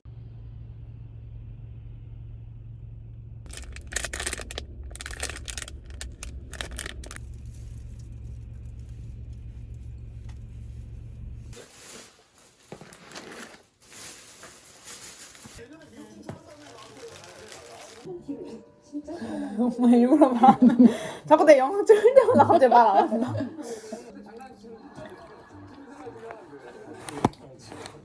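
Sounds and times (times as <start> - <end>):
steady low hum: 0.1 - 11.6
crinkling and rustling: 3.5 - 18.1, 25.0 - 28.0.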